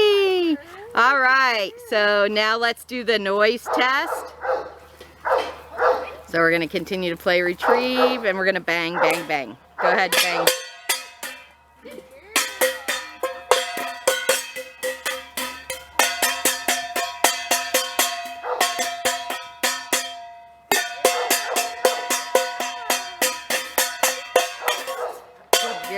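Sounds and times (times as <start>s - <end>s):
metal object clanging: 10.0s - 25.9s.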